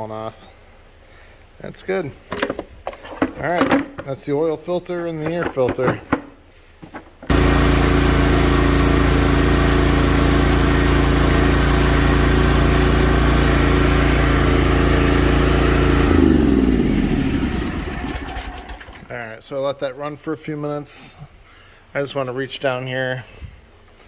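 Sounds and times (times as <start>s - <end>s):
mower engine running: 7.3s - 19.1s.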